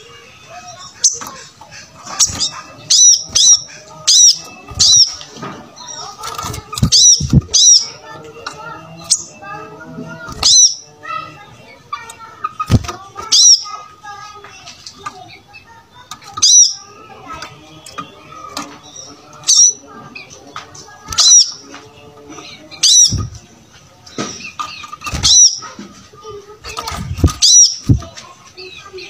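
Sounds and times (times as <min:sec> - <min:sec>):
birds chirping and twittering: 0:00.0 - 0:29.0
bird sharp high chirp: 0:02.1 - 0:09.5, 0:15.5 - 0:19.9, 0:24.0 - 0:25.8, 0:27.0 - 0:28.0.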